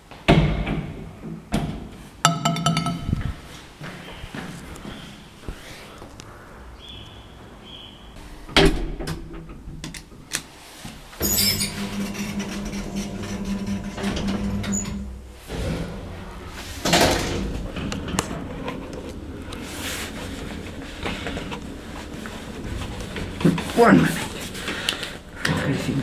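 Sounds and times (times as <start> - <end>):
lift doors banging shut: 8.4 - 9.8, 11.2 - 18.5
lift running hum: 11.1 - 26.0.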